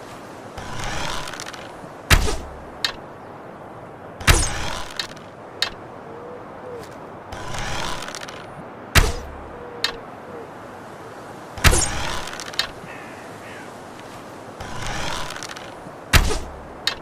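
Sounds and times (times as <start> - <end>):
bow drawing rustle: 0.0 - 3.1, 4.2 - 5.8, 6.7 - 10.0, 11.6 - 17.0
arrow thwacks with low thump: 2.1 - 2.6, 4.2 - 5.2, 9.0 - 9.3, 11.6 - 12.4, 16.1 - 17.0
light clicks: 9.8 - 10.0.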